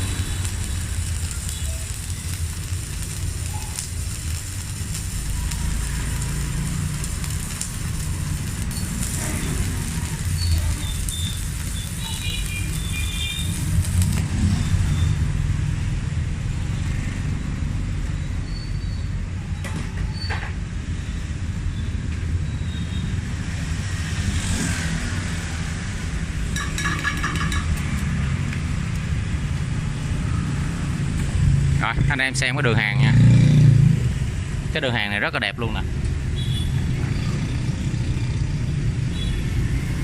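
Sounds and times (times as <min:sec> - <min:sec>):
stick welding: 0:00.0 - 0:15.3, 0:24.8 - 0:30.2
motorbikes: 0:00.0 - 0:40.0
street traffic rumble: 0:00.0 - 0:40.0.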